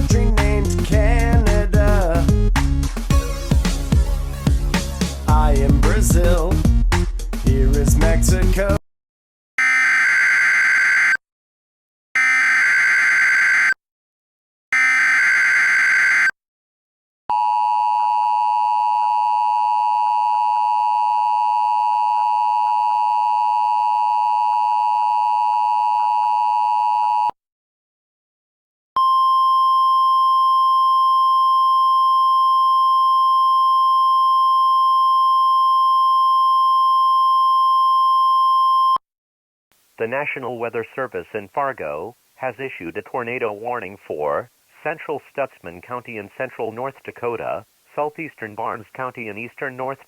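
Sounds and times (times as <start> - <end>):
single-pitch warning tone: 29.0 - 39.0.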